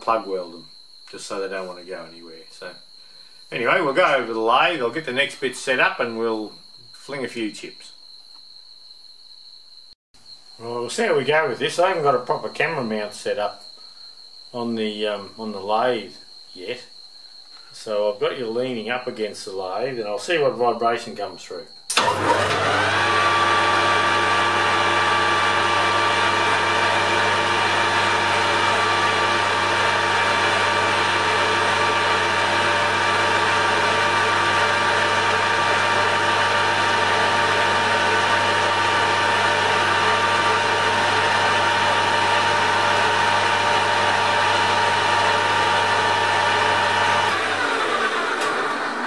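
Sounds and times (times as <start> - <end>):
metal lathe motor humming: 21.9 - 49.0.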